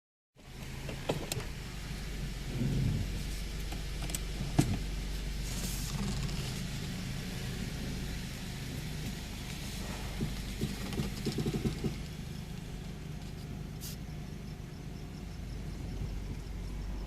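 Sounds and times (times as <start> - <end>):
car engine running: 0.4 - 17.0
steering creaks: 2.5 - 13.6.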